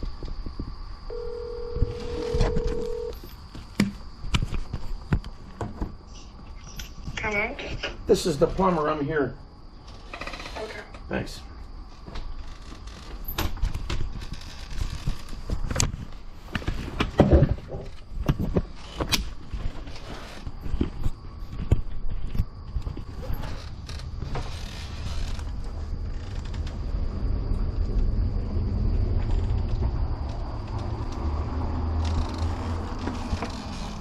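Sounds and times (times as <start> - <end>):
knocks and creaks in house: 0.0 - 9.0, 9.7 - 34.0
low rumble: 23.8 - 34.0.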